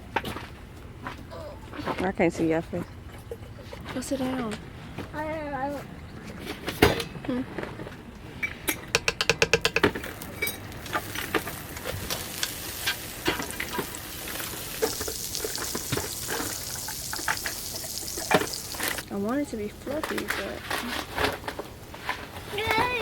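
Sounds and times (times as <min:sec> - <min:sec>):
food sizzling in a pan: 0:09.8 - 0:19.1.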